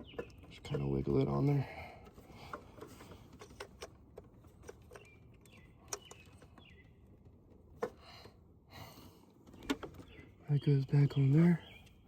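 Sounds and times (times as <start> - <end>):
light clicks and taps of parts: 0.0 - 8.4.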